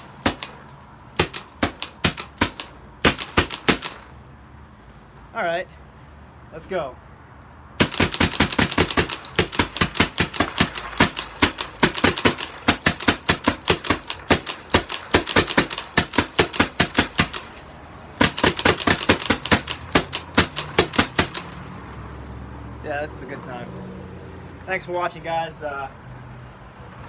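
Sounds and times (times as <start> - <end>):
paintball guns firing rapidly: 0.0 - 0.6, 1.2 - 4.1, 7.8 - 17.6, 18.2 - 21.6.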